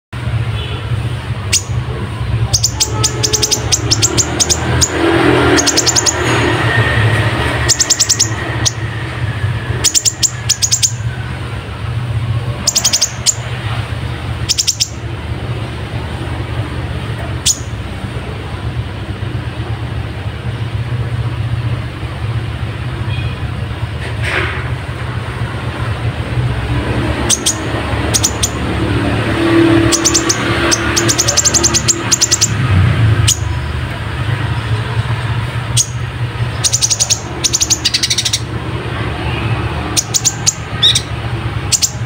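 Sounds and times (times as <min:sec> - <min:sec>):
bird chirping song: 0:01.4 - 0:11.4, 0:12.4 - 0:18.1, 0:26.9 - 0:42.0.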